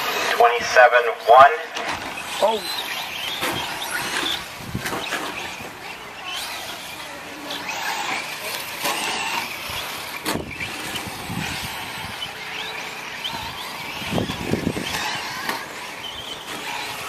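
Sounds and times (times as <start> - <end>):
rc truck motors whining: 0.0 - 17.0.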